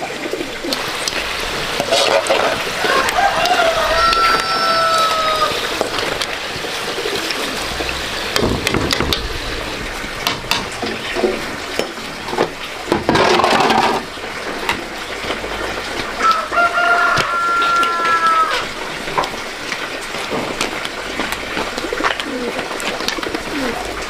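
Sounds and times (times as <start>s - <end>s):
rooster crowing: 2.6s - 6.1s, 16.2s - 18.8s
short noisy rush: 6.7s - 12.7s
clicks and knocks: 7.3s - 14.0s.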